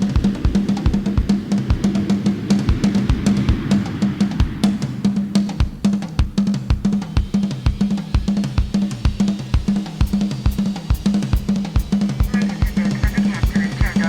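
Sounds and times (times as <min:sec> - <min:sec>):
snare and cymbal hits: 0:00.0 - 0:14.0
bass drum beat: 0:05.7 - 0:14.0.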